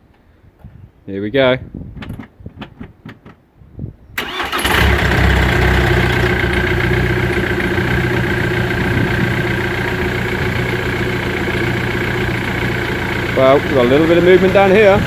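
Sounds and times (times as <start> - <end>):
diesel engine cranking and idling: 4.2 - 15.0.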